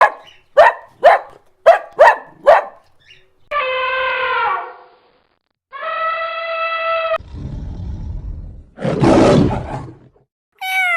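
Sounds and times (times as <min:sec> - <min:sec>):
dog barking: 0:00.0 - 0:02.9.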